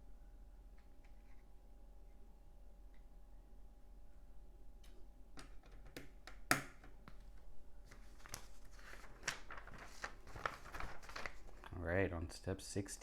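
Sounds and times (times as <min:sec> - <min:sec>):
pieces rustling: 0:07.9 - 0:11.7.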